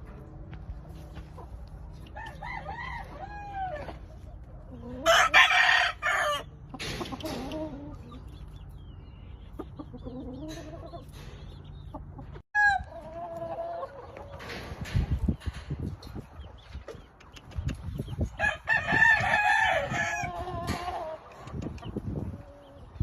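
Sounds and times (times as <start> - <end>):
chickens clucking: 0.0 - 23.0
rooster crowing: 2.2 - 4.0, 5.0 - 6.5, 18.4 - 20.4.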